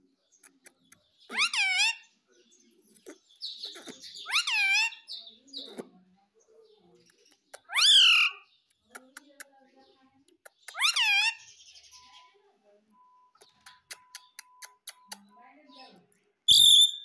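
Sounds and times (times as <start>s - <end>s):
parrot soft chattering: 0.4s - 2.0s, 2.9s - 5.9s, 10.4s - 11.4s
parrot high calls: 1.3s - 2.0s, 3.7s - 5.1s, 7.7s - 8.4s, 10.7s - 11.4s.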